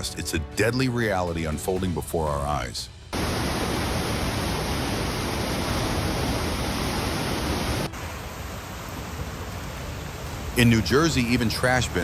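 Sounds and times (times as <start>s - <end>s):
floodwater rushing: 3.1s - 12.0s
water hissing: 3.2s - 12.0s.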